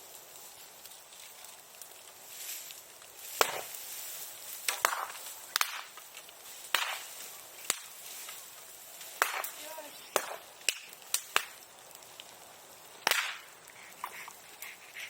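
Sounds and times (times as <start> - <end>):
bonfire crackling: 0.0 - 15.0
sharp pops: 3.2 - 3.9, 4.5 - 8.4, 9.0 - 15.0.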